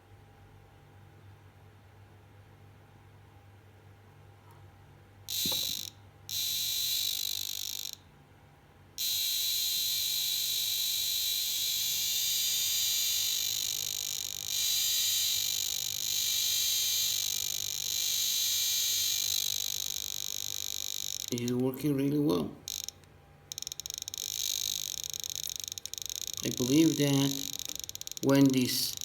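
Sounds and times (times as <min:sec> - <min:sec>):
radiation detector clicking buzz: 0:05.3 - 0:08.1, 0:09.0 - 0:29.0.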